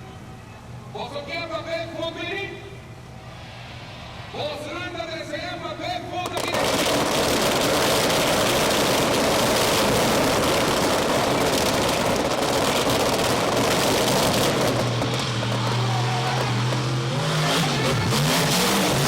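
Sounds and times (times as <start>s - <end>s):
monster truck engine roaring: 6.0s - 19.0s.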